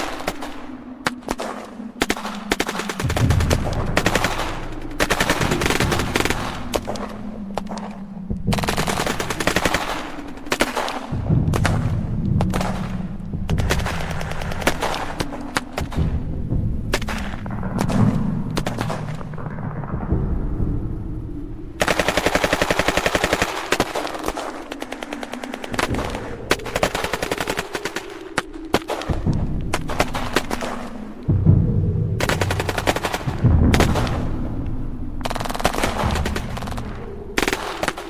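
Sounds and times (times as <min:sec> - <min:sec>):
machine-gun fire: 0:01.2 - 0:16.1
heavy low rumble: 0:01.8 - 0:23.2, 0:24.2 - 0:38.0.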